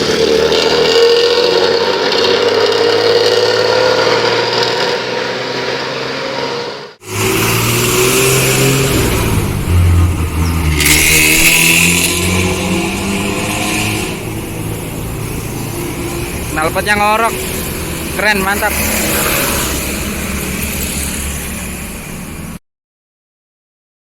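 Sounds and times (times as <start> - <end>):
bus pulling away: 0.0 - 22.6
deep growling bus exhaust: 6.9 - 18.2.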